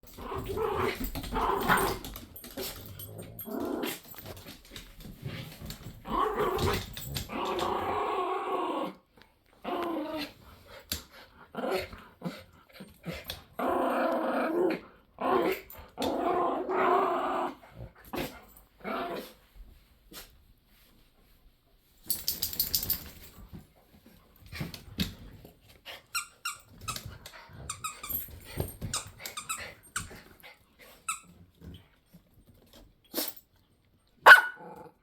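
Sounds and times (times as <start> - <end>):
dogs growling: 0.1 - 4.2, 5.4 - 10.4.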